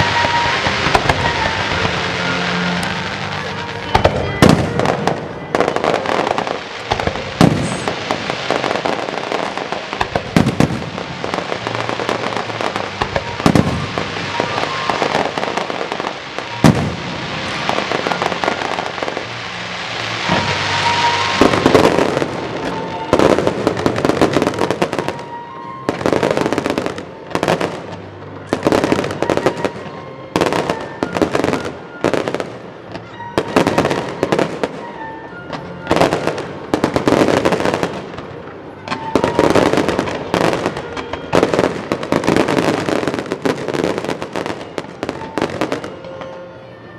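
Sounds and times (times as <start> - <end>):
firework shells bursting with bangs: 0.0 - 32.4
fireworks crackling: 0.0 - 46.9.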